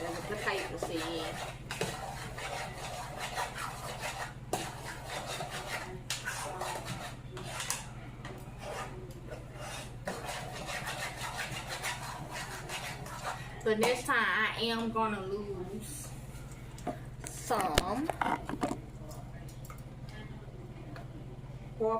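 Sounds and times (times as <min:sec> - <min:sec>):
spoon scraping mashed potatoes: 0:00.0 - 0:14.1.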